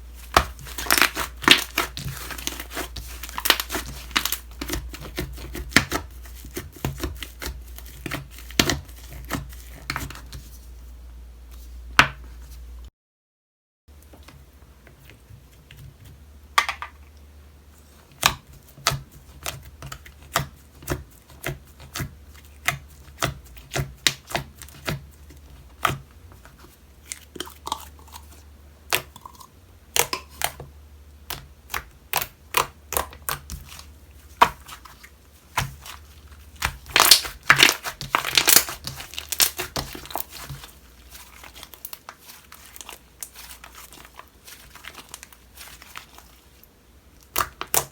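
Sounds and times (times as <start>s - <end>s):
crinkly slime crackling: 0.1s - 10.7s, 31.3s - 47.9s.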